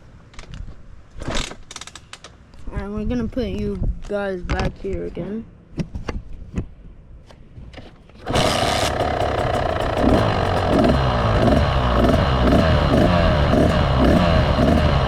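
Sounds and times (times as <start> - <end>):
motorcycle engine running: 8.3 - 15.0.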